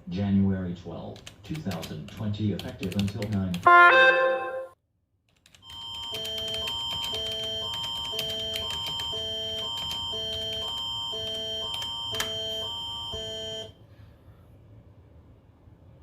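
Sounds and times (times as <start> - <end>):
steady high tone: 3.7 - 4.8.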